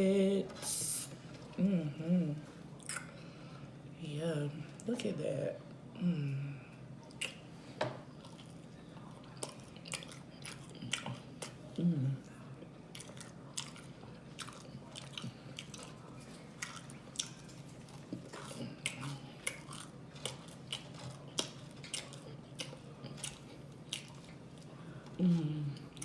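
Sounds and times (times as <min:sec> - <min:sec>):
person chewing food: 0:08.1 - 0:26.0.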